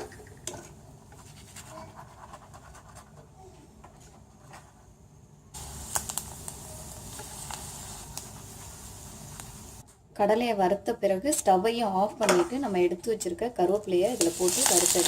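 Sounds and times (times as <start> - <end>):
peanuts sizzling in hot oil: 5.6 - 9.8, 14.0 - 15.0.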